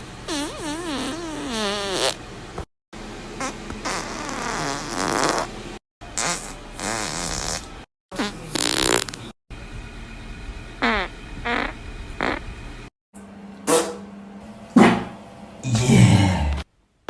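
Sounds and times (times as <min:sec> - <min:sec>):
short squeaky farts: 0:00.2 - 0:02.2, 0:03.4 - 0:05.6, 0:06.2 - 0:09.4, 0:10.8 - 0:12.5
long wavering farts: 0:03.4 - 0:05.6, 0:06.2 - 0:09.2, 0:10.8 - 0:12.4.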